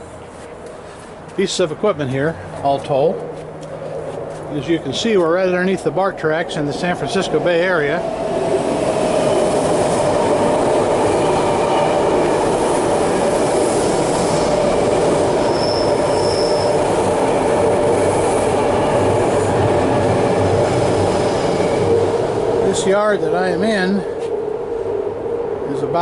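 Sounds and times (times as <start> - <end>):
train rumbling on rails: 0.0 - 26.0
high wheel squeal: 15.4 - 17.2, 20.8 - 22.0.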